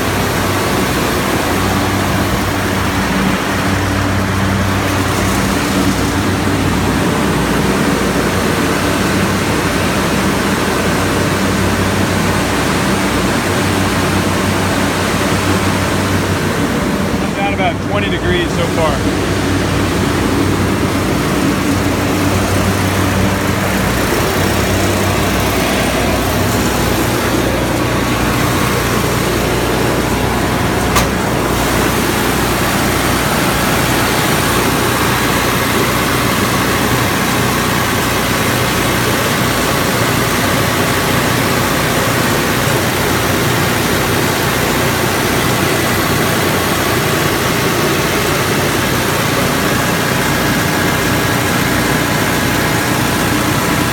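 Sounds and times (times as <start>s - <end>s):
air-conditioning unit running: 0.0s - 53.9s
sharp click: 30.8s - 31.2s.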